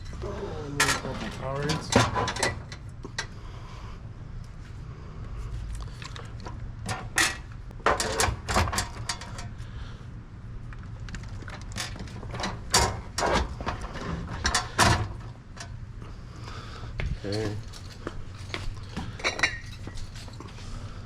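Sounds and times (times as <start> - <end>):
vending machine hum: 0.0 - 21.0
bottles knocking and rattling: 18.4 - 20.4.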